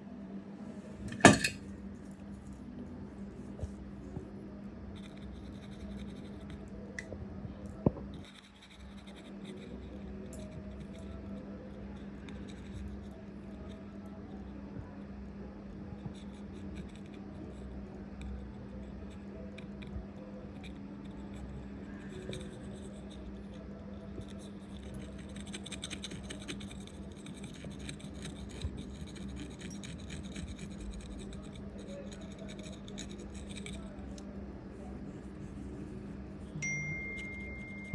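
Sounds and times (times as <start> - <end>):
steady low hum: 0.0 - 37.9
small tool scraping circuit board: 5.0 - 6.6, 20.6 - 33.9.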